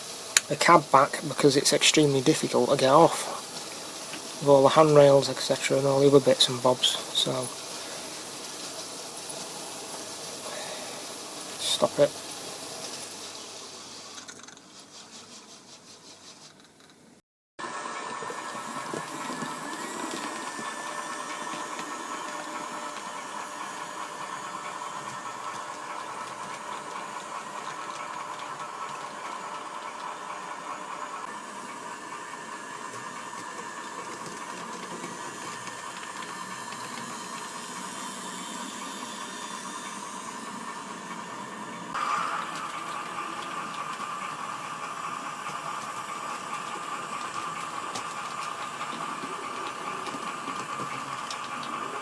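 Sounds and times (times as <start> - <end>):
wheel and gear hiss: 0.0 - 16.9, 17.6 - 52.0
small electric motor whine: 17.6 - 52.0.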